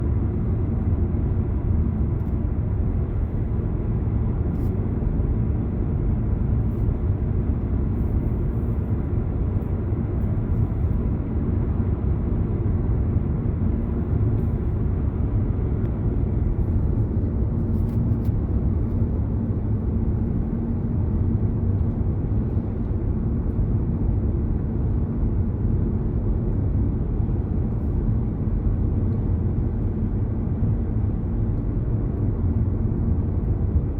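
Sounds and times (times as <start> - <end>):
car road and engine rumble: 0.0 - 33.9.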